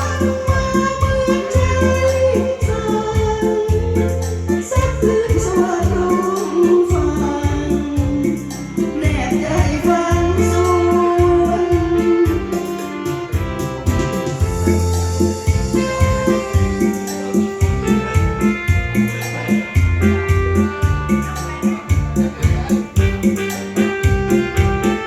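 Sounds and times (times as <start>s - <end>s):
person singing over beat: 0.0s - 12.9s.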